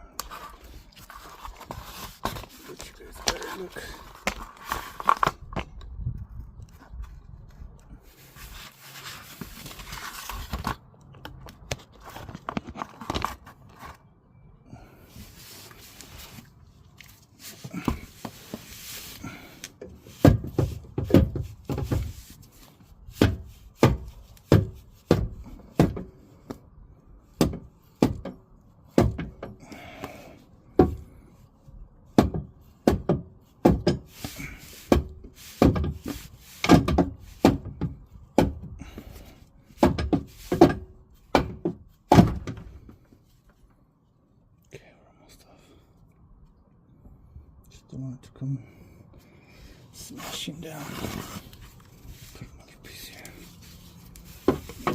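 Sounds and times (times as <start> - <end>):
wooden blocks scraping: 0.2 - 5.6, 6.7 - 10.8, 17.2 - 26.5, 33.5 - 41.4, 50.0 - 54.9.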